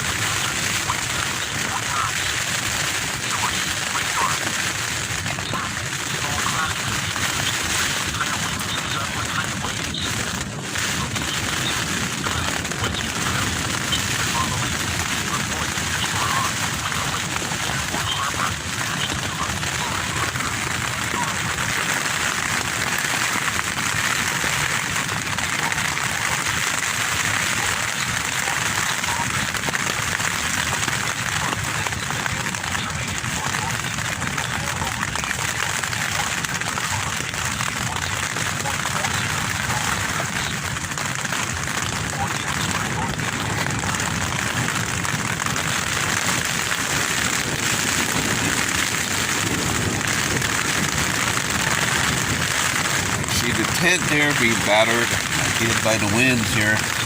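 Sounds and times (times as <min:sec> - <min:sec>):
tent fabric flapping in wind: 0:39.7 - 0:53.7.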